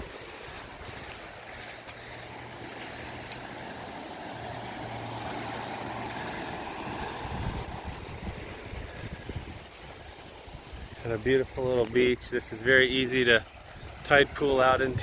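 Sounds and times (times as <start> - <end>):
low motor hum: 0.0 - 9.8
waves washing on shore: 0.0 - 15.0
wind on microphone: 4.6 - 15.0.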